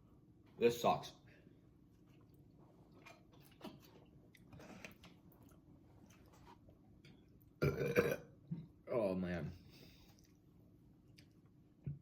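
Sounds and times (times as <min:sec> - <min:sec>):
chewing mouth noises: 0:01.9 - 0:07.5, 0:10.1 - 0:11.5.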